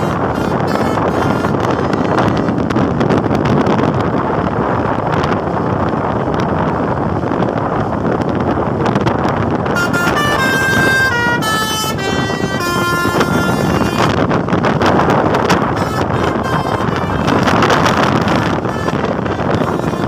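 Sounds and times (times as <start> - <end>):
bus horn melody: 0.0 - 3.0, 9.6 - 20.0
loud steady rushing noise: 0.0 - 20.0.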